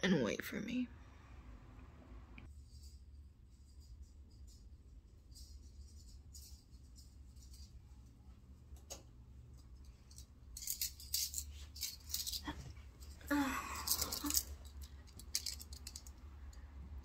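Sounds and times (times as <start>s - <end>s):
small metal objects jangling: 9.6s - 16.7s.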